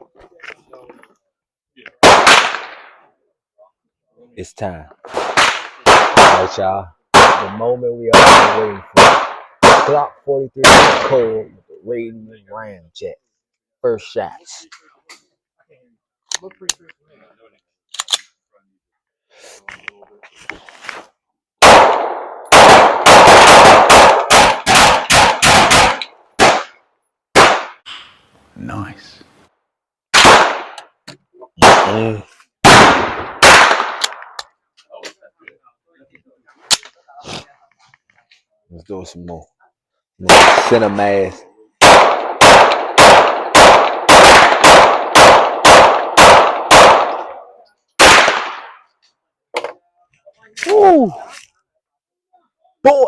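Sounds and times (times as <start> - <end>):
semi-automatic gunfire: 2.0 - 2.9, 5.1 - 6.5, 7.1 - 7.5, 8.1 - 10.0, 10.6 - 11.2, 21.6 - 27.8, 30.1 - 30.8, 32.6 - 34.3, 40.3 - 40.9, 41.8 - 47.3, 48.0 - 48.8
gunshots with ringing echo: 2.0 - 3.1, 5.1 - 11.4, 21.6 - 27.8, 30.1 - 30.8, 31.6 - 34.4, 40.2 - 41.0, 41.8 - 48.8.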